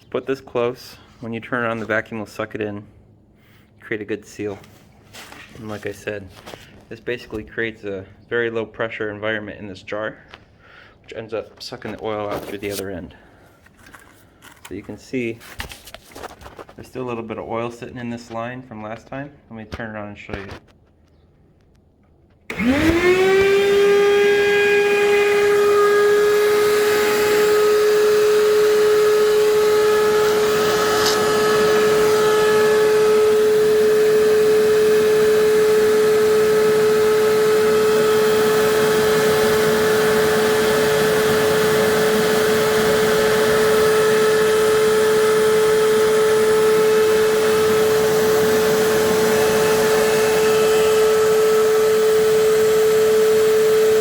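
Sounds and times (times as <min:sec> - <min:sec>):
shop vac motor whining: 0:22.4 - 0:54.0.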